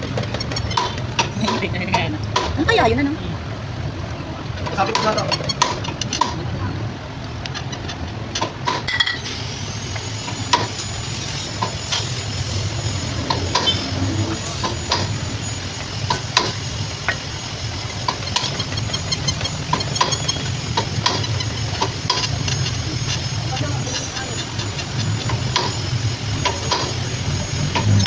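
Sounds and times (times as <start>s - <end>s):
golf cart humming: 9.2s - 28.0s
short squeaks and clicks: 17.8s - 28.0s.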